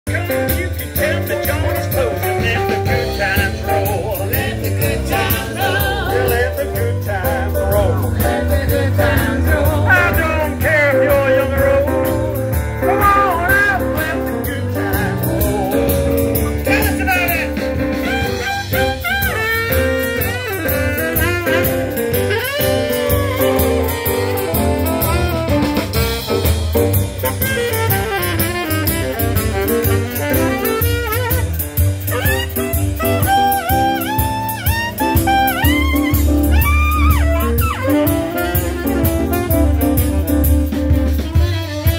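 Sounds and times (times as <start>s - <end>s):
swing jazz band playing: 0.0s - 41.9s
person singing: 0.2s - 18.6s.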